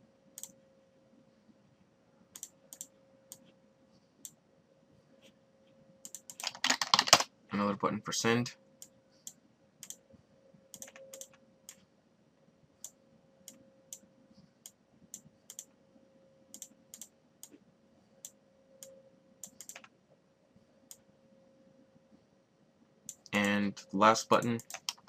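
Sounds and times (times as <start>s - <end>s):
faint steady hum: 0.0s - 25.0s
computer mouse and keyboard clicks: 2.3s - 3.5s, 6.0s - 7.3s, 8.8s - 10.0s, 10.7s - 11.8s, 12.8s - 15.7s, 18.2s - 19.9s, 24.3s - 25.0s.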